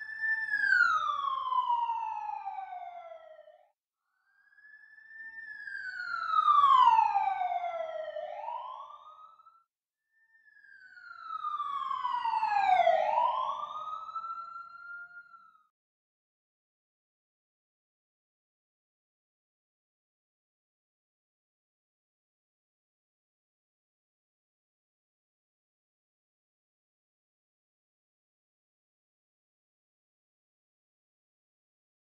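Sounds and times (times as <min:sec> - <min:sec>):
emergency vehicle siren wailing: 0:00.0 - 0:03.5, 0:04.6 - 0:09.6, 0:10.7 - 0:15.7.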